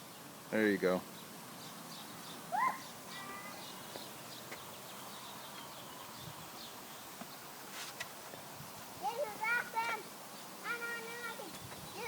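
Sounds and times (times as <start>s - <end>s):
birds chirping faintly: 0.0s - 12.0s
faint outdoor background hiss: 0.0s - 12.0s.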